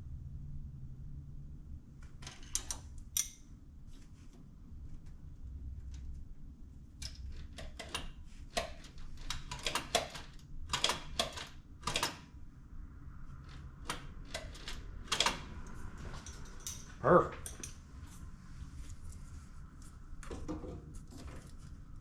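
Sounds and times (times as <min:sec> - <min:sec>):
hand tools clinking on metal: 0:16.2 - 0:17.8.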